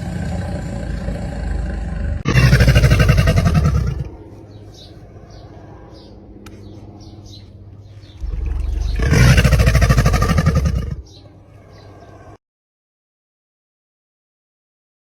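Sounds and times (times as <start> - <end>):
large animal roaring: 0.0 - 4.2, 8.2 - 12.4
animal growling: 0.0 - 4.4, 8.1 - 12.4.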